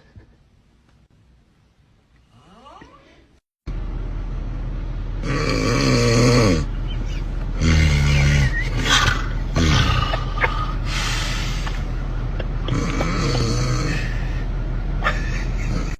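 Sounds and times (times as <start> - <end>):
steady low hum: 0.0 - 15.9
loud snoring: 5.2 - 6.7, 7.5 - 11.8, 12.7 - 14.3.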